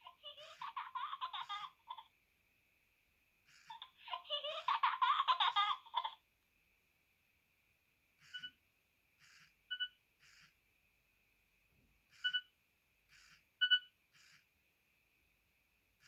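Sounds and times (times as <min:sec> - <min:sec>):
child laughter ringtone: 0:00.0 - 0:02.1, 0:03.7 - 0:06.2.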